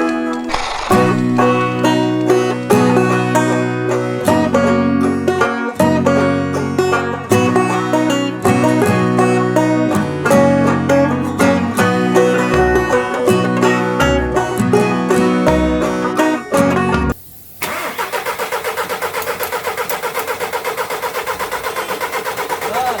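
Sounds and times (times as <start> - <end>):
upbeat banjo and guitar tune: 0.0 - 17.2
steady bass line: 8.4 - 17.2.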